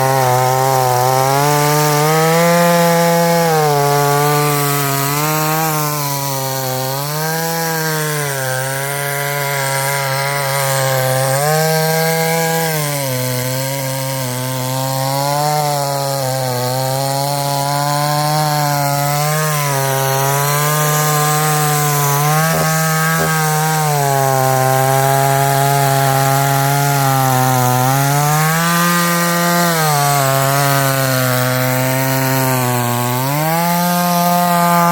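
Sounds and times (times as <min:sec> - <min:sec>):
chainsaw running: 0:00.0 - 0:34.9.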